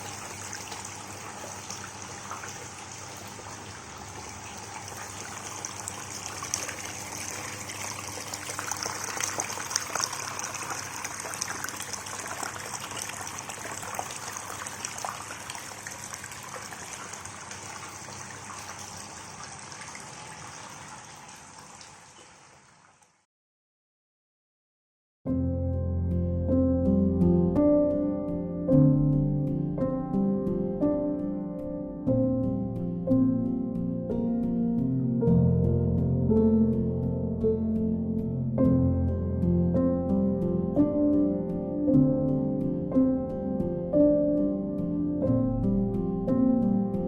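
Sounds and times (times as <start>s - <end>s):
water drips and splashes: 0.0s - 23.3s
small waterfall trickling over rock: 4.2s - 23.3s.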